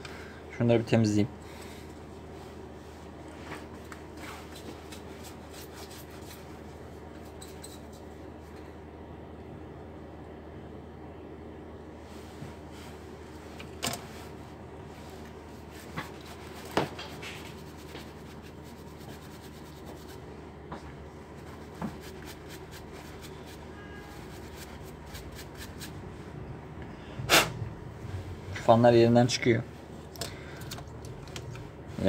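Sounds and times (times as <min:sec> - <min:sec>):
steady low hum: 0:00.0 - 0:32.0.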